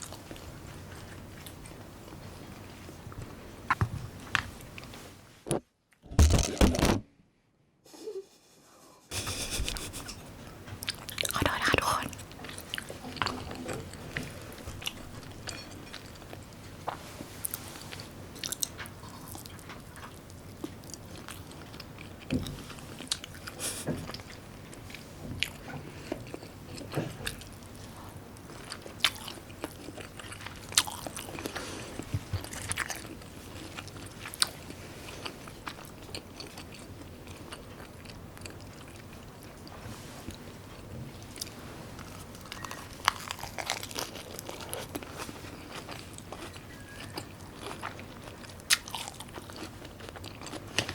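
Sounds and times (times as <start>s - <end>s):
person chewing and crunching food: 10.8s - 50.9s.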